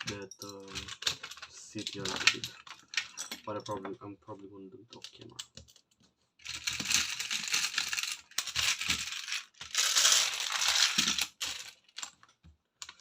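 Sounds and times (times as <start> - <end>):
plastic bricks clattering: 6.4 - 12.1.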